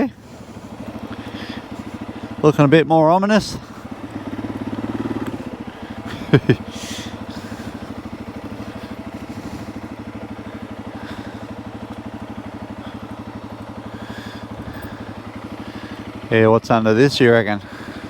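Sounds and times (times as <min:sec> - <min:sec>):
motorcycle engine running steadily: 0:00.0 - 0:18.0.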